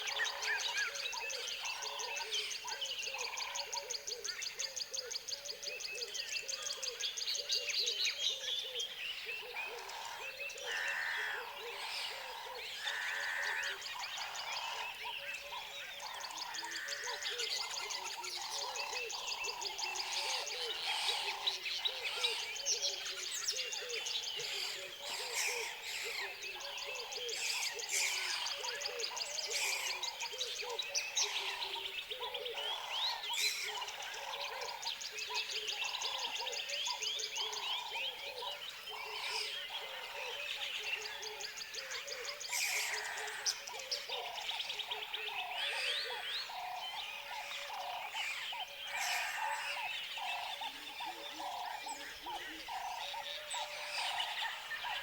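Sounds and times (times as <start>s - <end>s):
birds chirping and trilling: 0.0s - 55.0s
frogs calling: 9.8s - 22.5s, 24.4s - 55.0s.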